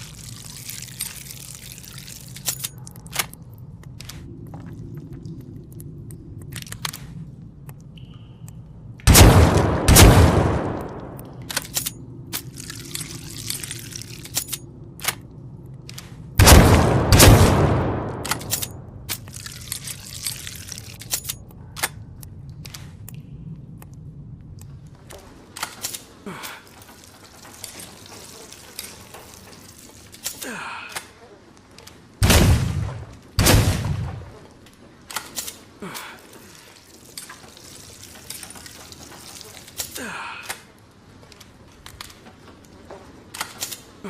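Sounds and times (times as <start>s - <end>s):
shotgun blasts: 9.1s - 11.2s, 16.4s - 18.5s, 32.2s - 34.3s
sharp gun clicks: 17.2s - 19.2s
light clicks and rattles: 18.2s - 32.2s, 34.4s - 44.0s.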